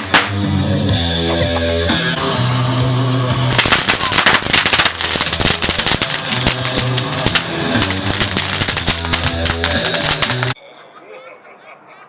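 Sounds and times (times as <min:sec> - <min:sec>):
loud rock music: 0:00.0 - 0:10.6
rapid crackle of popping hits: 0:03.3 - 0:10.6.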